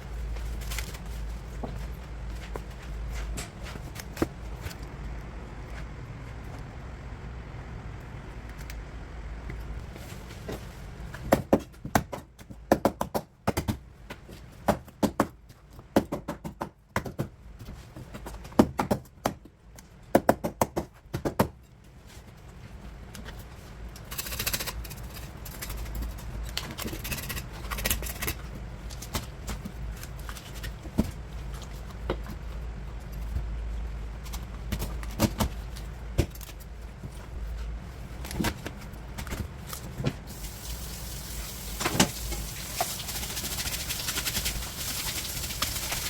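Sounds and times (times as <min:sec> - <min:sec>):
steady hiss: 0:40.3 - 0:46.0.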